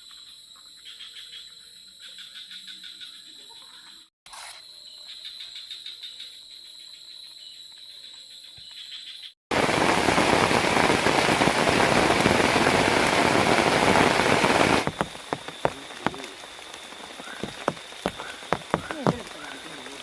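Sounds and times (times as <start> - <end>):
frogs calling: 0.0 - 9.4, 13.4 - 20.0
heavy rain pouring: 9.5 - 20.0
raindrops dripping: 9.5 - 20.0.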